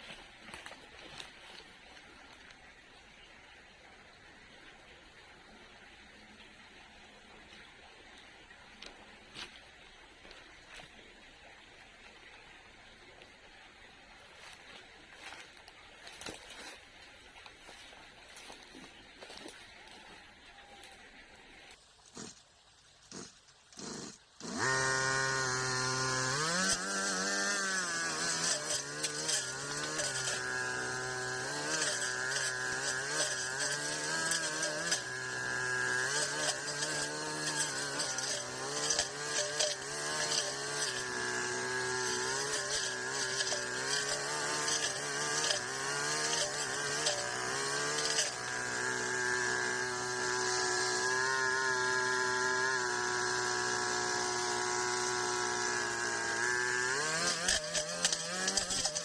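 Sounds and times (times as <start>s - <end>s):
brush cutter engine cutting grass: 0.0s - 59.0s.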